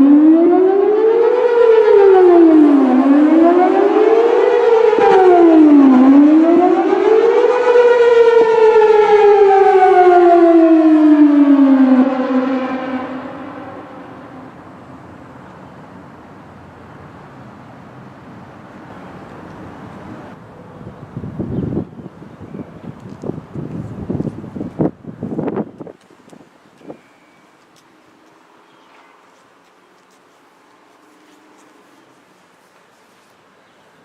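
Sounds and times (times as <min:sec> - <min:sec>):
warning siren wailing: 0:00.0 - 0:15.5
faint background noise: 0:13.0 - 0:34.0.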